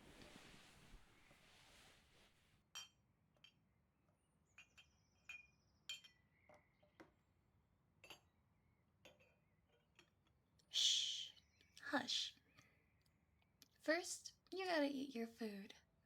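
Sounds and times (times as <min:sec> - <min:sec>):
dishes and cutlery clinking: 0:04.6 - 0:06.2.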